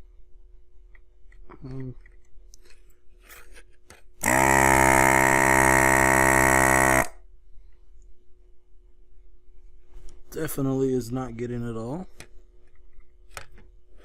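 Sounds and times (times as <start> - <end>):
desoldering vacuum pump buzzing: 4.2 - 7.2.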